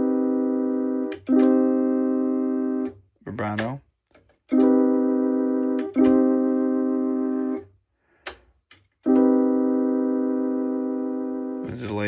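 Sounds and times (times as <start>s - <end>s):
electronic keyboard note: 0.0s - 3.6s, 4.5s - 7.6s, 9.1s - 12.0s.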